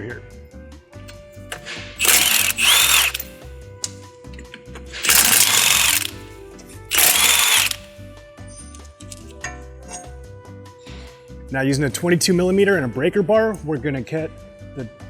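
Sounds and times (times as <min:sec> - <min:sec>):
impact wrench bursts: 0:02.0 - 0:03.4, 0:05.0 - 0:06.2, 0:06.9 - 0:07.9.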